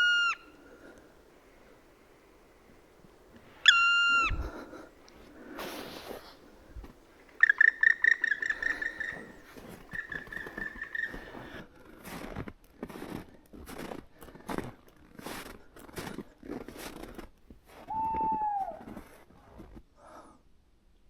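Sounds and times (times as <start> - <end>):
bird calling ringing notes: 0.0 - 0.7, 3.6 - 4.4, 7.3 - 11.3.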